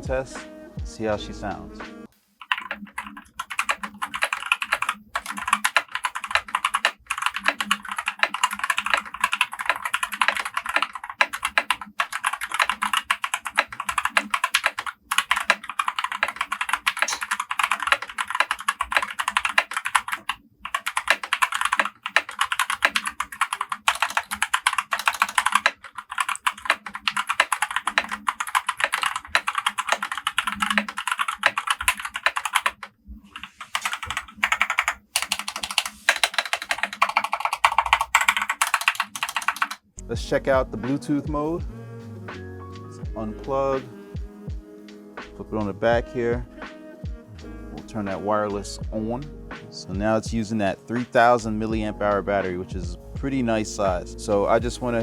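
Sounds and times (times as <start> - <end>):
fast typing on mechanical keyboard: 2.4 - 39.8.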